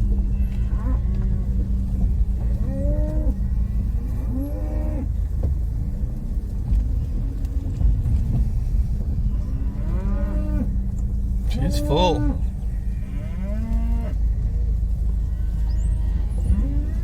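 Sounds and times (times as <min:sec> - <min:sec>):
car rumbling: 0:00.0 - 0:17.0
cattle mooing: 0:00.3 - 0:05.1, 0:09.3 - 0:10.7, 0:11.5 - 0:14.2, 0:15.2 - 0:17.0.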